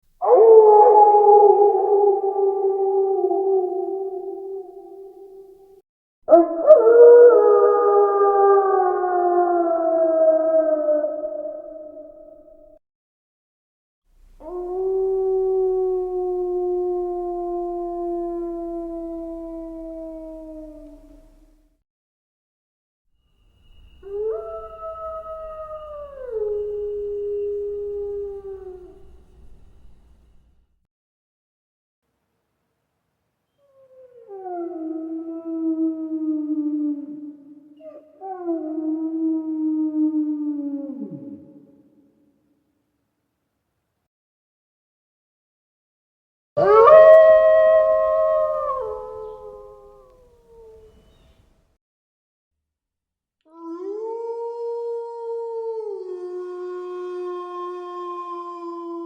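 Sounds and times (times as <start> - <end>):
wolf howling: 0.2 - 5.5, 6.3 - 12.3, 14.4 - 21.3, 24.0 - 29.8, 33.6 - 41.6, 46.6 - 51.1, 53.5 - 59.0.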